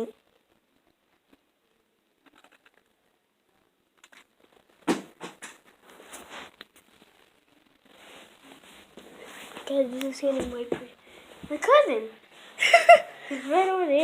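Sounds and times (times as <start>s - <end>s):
soft rustling: 5.6s - 12.6s, 13.2s - 14.0s.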